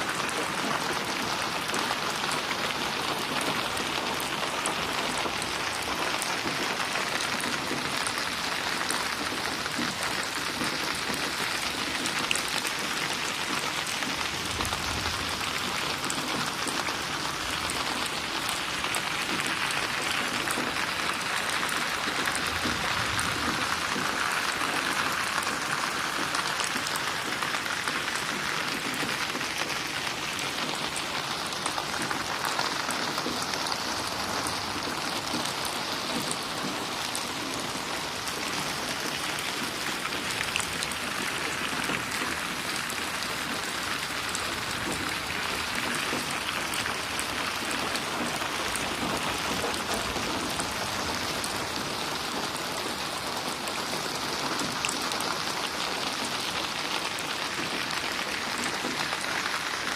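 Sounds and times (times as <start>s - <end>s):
raindrops ticking and splashing: 0.0s - 59.9s
steady rain falling: 0.0s - 59.9s.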